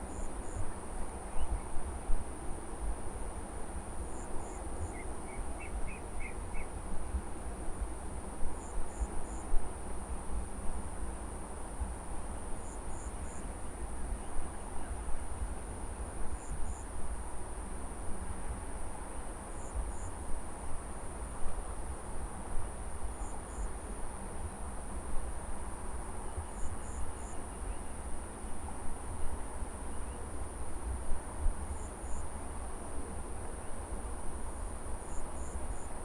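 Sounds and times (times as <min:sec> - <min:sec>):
insects droning: 0:00.0 - 0:36.0
cricket triple chirp: 0:04.1 - 0:06.7.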